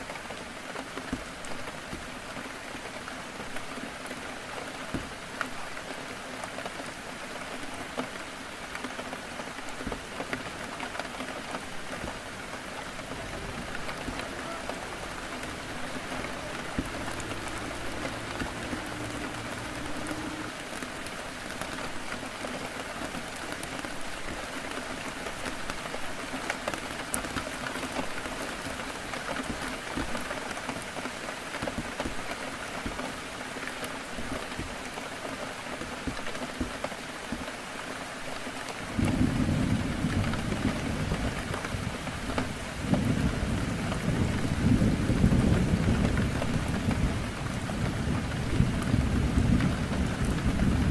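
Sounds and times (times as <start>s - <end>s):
heavy rain on a window: 0.0s - 50.9s
faint low drone: 13.1s - 20.6s.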